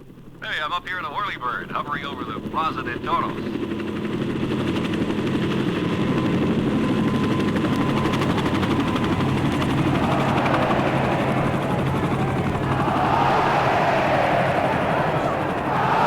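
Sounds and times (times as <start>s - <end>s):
helicopter rotor chop: 1.6s - 16.0s.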